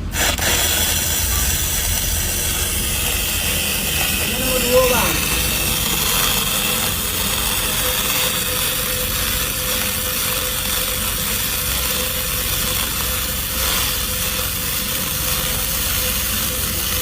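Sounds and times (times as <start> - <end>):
welding arc crackling: 0.0 - 17.0.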